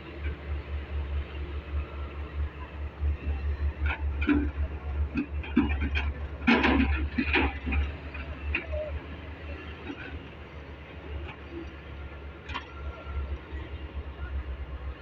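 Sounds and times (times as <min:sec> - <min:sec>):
diesel engine low rumble: 0:00.0 - 0:15.0
knocks and clatters: 0:03.8 - 0:08.8.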